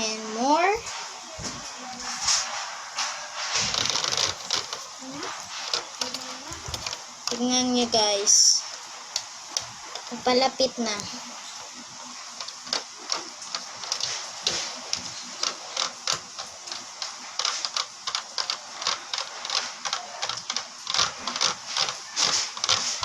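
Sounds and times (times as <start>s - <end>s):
slime squelching being stirred: 2.0s - 23.0s.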